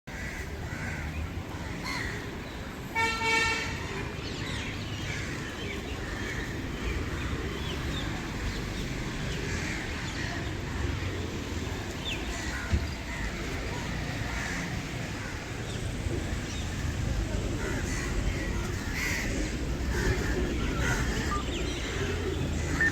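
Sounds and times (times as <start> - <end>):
flock of birds calling: 0.1 - 22.9
vehicle horn honk: 3.0 - 3.7.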